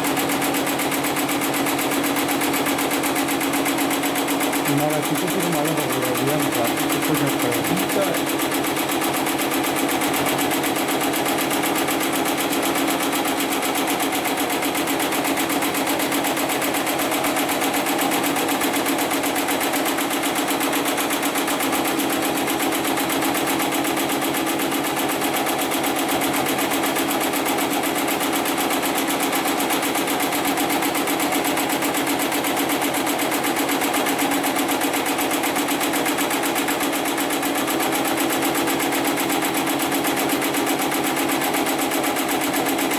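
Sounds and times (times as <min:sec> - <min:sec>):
sewing machine stitching: 0:00.0 - 0:42.9.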